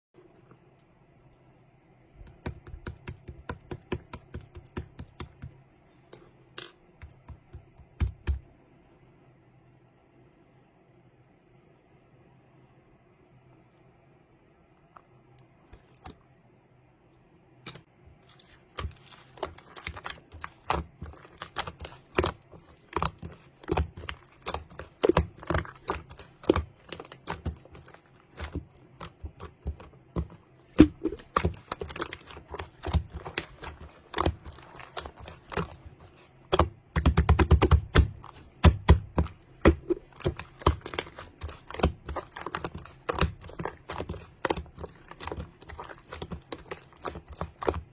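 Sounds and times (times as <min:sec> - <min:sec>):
rapid clicking and tapping: 0:02.3 - 0:05.6, 0:18.8 - 0:47.9.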